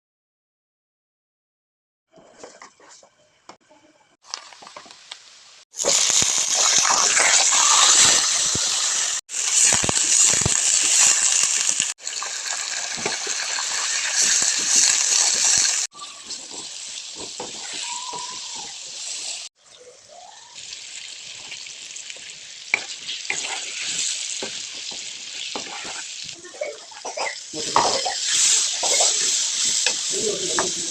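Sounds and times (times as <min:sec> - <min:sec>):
food sizzling in hot oil: 0:04.3 - 0:30.9.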